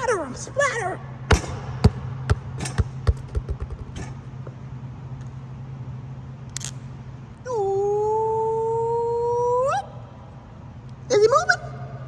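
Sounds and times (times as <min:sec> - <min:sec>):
steady low hum: 0:00.0 - 0:12.0
sharp knocks: 0:01.3 - 0:04.6.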